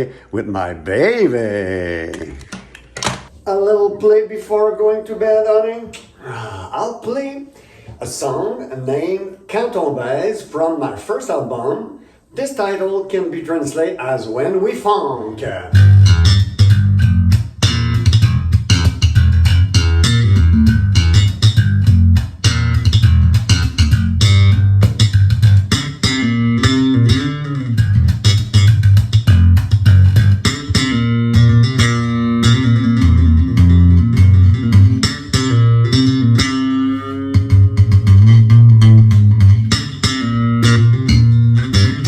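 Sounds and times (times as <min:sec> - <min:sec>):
funk electric bass line: 0:15.7 - 0:42.0.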